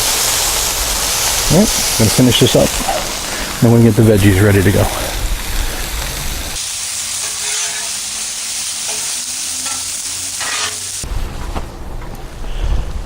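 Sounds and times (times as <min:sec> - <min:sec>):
chicken sizzling on a griddle: 0:00.0 - 0:11.1.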